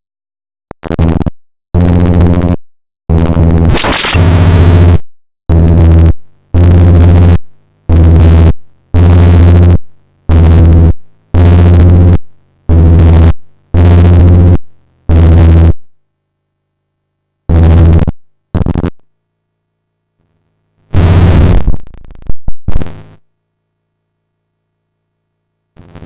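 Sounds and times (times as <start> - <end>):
distorted synth bass notes: 0.8 - 15.8, 17.5 - 19.0, 20.9 - 23.0.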